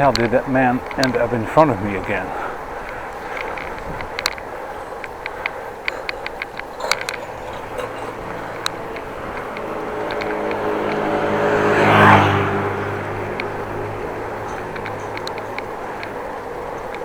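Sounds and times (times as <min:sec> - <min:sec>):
sharp clicks: 0:00.0 - 0:17.0
vehicle passing: 0:00.0 - 0:17.0.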